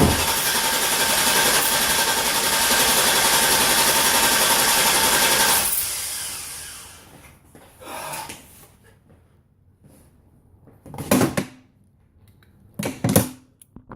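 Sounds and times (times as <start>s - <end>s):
electric starter motor whirring: 0.0s - 7.2s.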